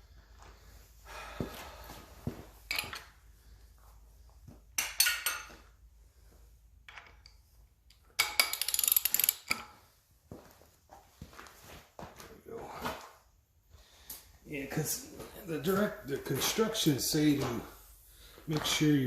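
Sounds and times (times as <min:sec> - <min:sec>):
socket ratchet clicking: 0:08.2 - 0:09.5.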